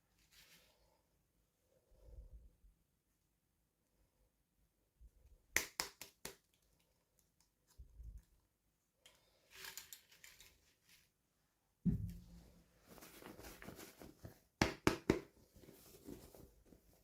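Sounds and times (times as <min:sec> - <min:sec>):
dull low bump: 0:11.9 - 0:12.6.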